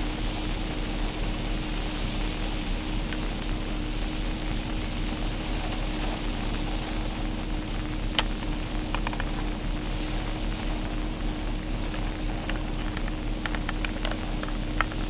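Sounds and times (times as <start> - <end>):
wind rumble on microphone: 0.0 - 15.0
faint ticks: 8.0 - 9.5, 11.8 - 15.0.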